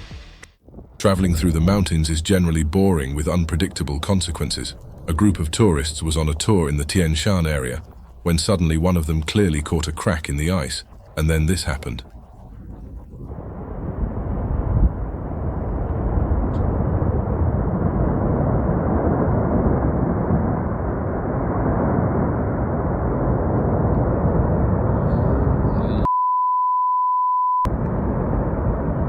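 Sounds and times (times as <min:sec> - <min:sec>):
avalanche rumbling: 0:00.0 - 0:26.1, 0:27.7 - 0:29.0
censor bleep: 0:26.0 - 0:27.7.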